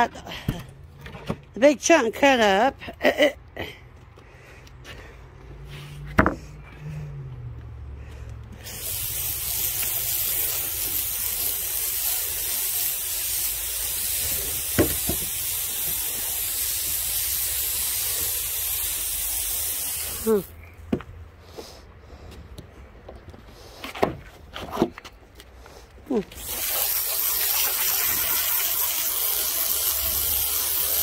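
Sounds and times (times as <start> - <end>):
steady spraying hiss: 8.6 - 20.5, 26.4 - 31.0.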